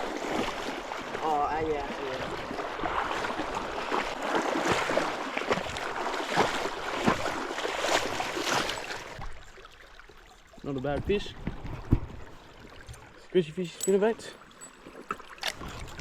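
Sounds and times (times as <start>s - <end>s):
fish thrashing and splashing water: 0.0s - 10.5s, 14.8s - 16.0s.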